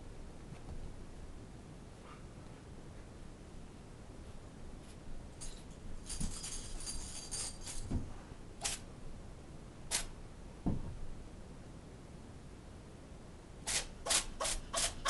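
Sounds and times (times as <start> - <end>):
crackly metallic jingle: 5.3 - 7.9.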